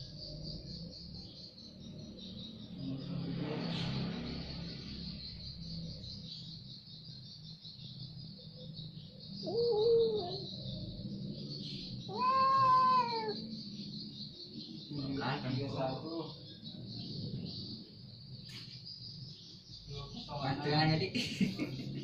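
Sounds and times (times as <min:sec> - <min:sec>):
crickets chirping: 0:00.0 - 0:22.0
cat yowling: 0:09.4 - 0:10.6, 0:12.0 - 0:13.5.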